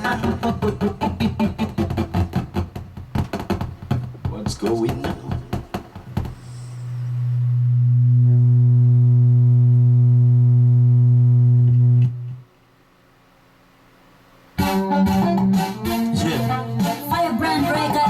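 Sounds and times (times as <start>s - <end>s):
backing track with a beat: 0.0s - 6.9s, 14.6s - 18.0s.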